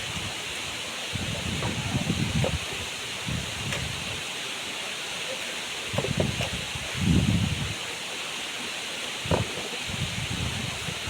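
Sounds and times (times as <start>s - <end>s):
wind rumbling on microphone: 0.0s - 4.3s, 5.9s - 7.9s, 9.2s - 11.0s
waterfall rushing: 0.0s - 11.0s.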